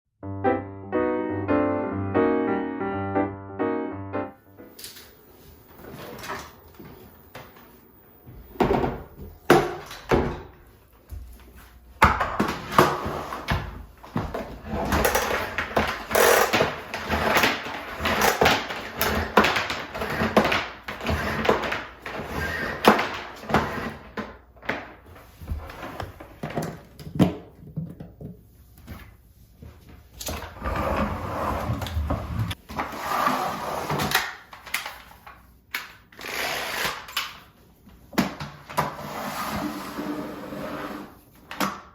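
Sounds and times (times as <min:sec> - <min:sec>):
objects knocking and bumping: 0:12.0 - 0:29.0.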